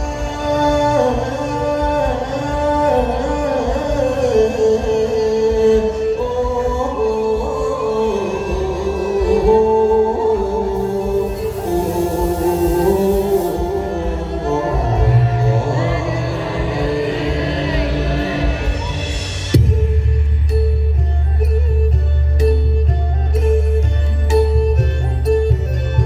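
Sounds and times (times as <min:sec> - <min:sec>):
person singing long notes: 0:00.0 - 0:19.6
instrumental accompaniment: 0:00.0 - 0:26.0
deep sustained tone: 0:06.2 - 0:22.0.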